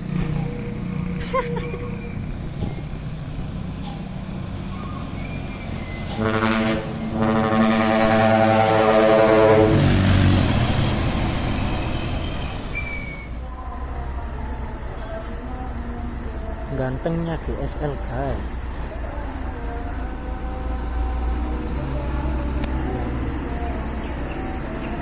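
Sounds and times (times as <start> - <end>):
diesel truck engine rumble: 0.0 - 25.0
road noise: 0.0 - 25.0
truck air horn blast: 6.1 - 10.4.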